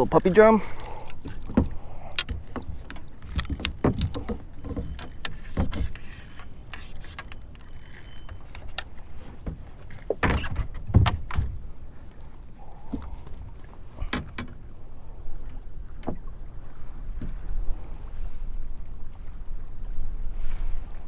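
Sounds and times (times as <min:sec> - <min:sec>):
knocks and clatter on kayak: 0:01.1 - 0:11.8, 0:12.8 - 0:14.6, 0:15.9 - 0:16.4.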